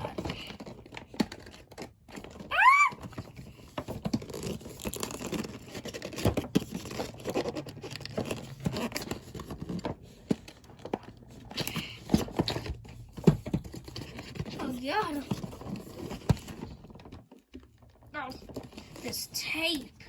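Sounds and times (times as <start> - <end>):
tape being peeled: 1.0 - 9.9
cardboard box scraping and rustling: 3.4 - 17.1.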